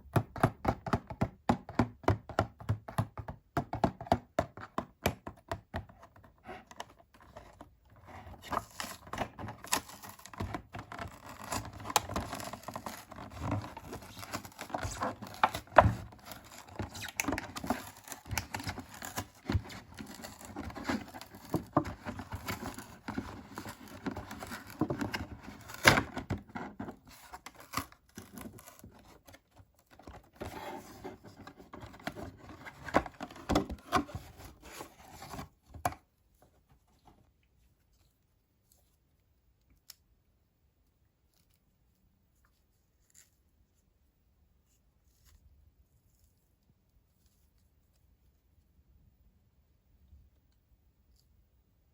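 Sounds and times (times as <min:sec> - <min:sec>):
packaging crinkling and tearing: 0:08.4 - 0:26.3, 0:27.1 - 0:29.4.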